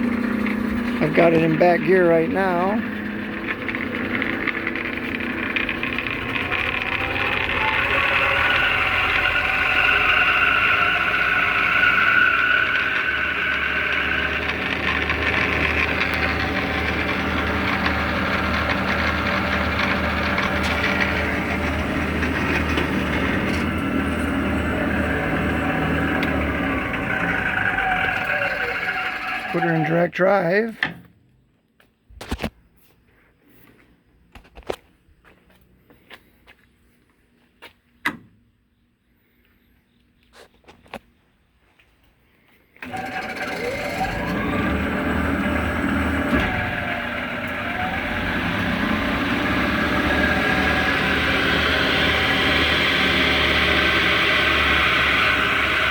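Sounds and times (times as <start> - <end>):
low motor hum: 0.0 - 30.0, 42.8 - 55.9
metal lathe running: 0.0 - 30.4, 42.8 - 55.9
spindle whine: 0.0 - 30.4, 42.8 - 55.9.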